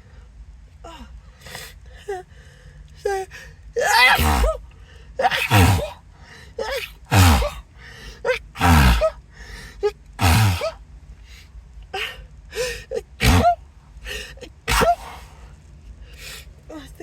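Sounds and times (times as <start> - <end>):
gasping breaths: 1.3 - 16.5
person sneezing: 3.8 - 4.6, 5.2 - 6.0, 6.6 - 7.6, 8.2 - 9.2, 10.2 - 10.8, 12.0 - 15.4.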